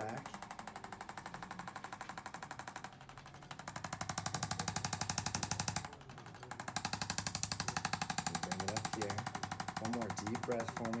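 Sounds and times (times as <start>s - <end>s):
percussion device tapping fast: 0.0s - 11.0s.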